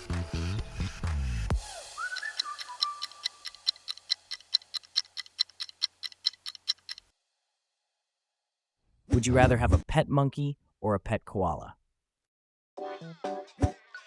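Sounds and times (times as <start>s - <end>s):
clock ticking: 2.1s - 7.1s.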